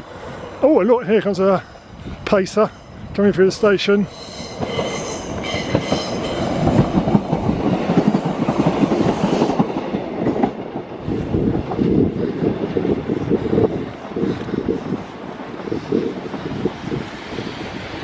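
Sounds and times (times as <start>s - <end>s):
train wheels clattering over rail joints: 4.3s - 16.8s.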